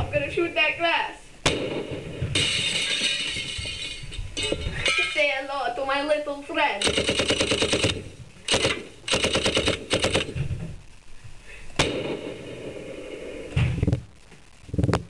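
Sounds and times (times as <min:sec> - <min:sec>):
sharp crack with ringing: 0:01.4 - 0:05.3, 0:06.8 - 0:10.4, 0:11.8 - 0:12.8
machine-gun fire bursts: 0:06.8 - 0:10.4, 0:11.8 - 0:13.4.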